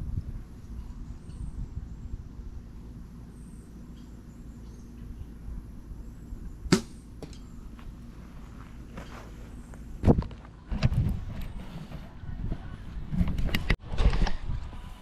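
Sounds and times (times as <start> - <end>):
arrow hitting target: 6.7 - 7.4.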